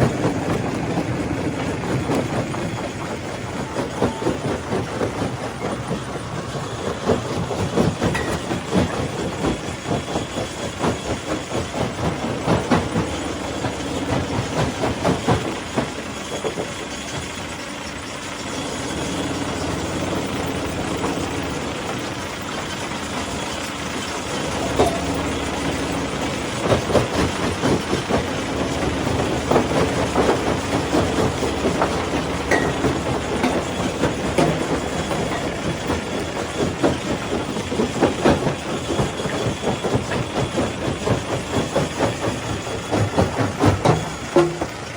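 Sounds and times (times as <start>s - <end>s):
stone crusher hum: 0.0s - 44.9s
rock crushing clatter: 24.2s - 44.9s.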